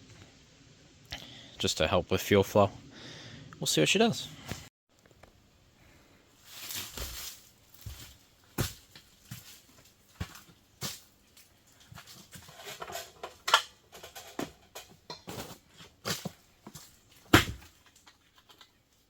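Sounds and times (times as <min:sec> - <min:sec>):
objects clicking and knocking: 0:11.8 - 0:18.8.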